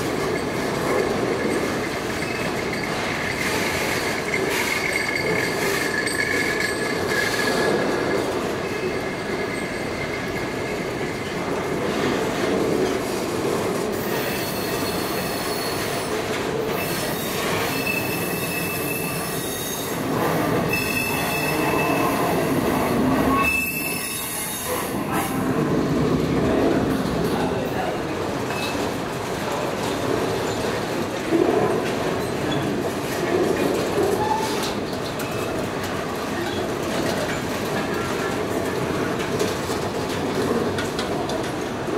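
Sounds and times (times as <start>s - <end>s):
freight train wheels rumbling: 0.0s - 41.9s
wheel squeal: 14.0s - 16.1s, 16.8s - 25.0s.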